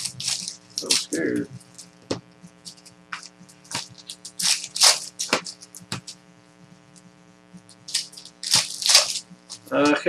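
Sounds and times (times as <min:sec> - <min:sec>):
card wrappers crinkling: 0:00.0 - 0:06.2, 0:07.7 - 0:10.0
faint electrical hum: 0:00.0 - 0:10.0.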